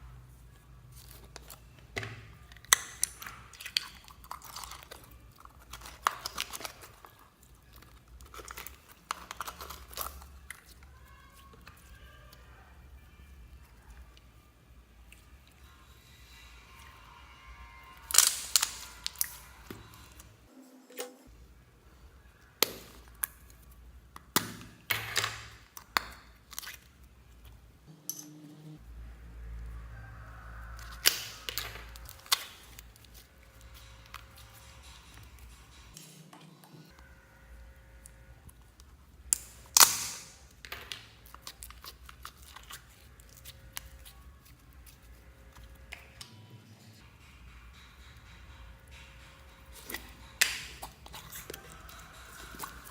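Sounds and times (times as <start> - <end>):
slime worked by hand: 0.0 - 21.2, 21.9 - 27.8, 29.4 - 37.0, 37.6 - 46.4, 49.5 - 52.9
loud crackly slime pop: 18.1 - 19.4, 31.0 - 31.7, 39.4 - 41.0.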